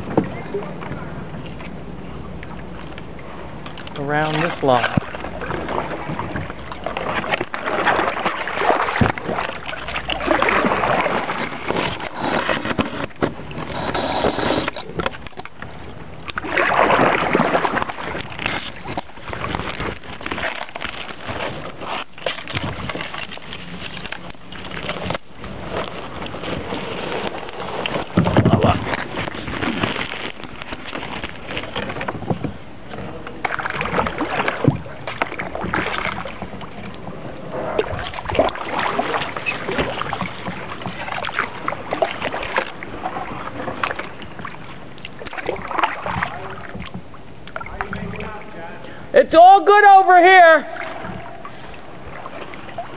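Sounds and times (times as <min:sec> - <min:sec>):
water sloshing around hull: 0:00.0 - 0:49.1, 0:50.6 - 0:52.9
paddle strokes splashing: 0:00.0 - 0:52.9
paddle knocking on boat: 0:28.1 - 0:29.0.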